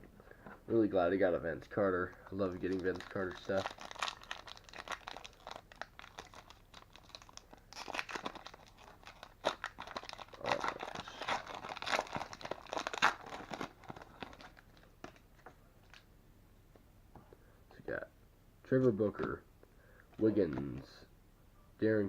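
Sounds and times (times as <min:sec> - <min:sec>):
wrapper tearing and crinkling: 0:02.4 - 0:15.2.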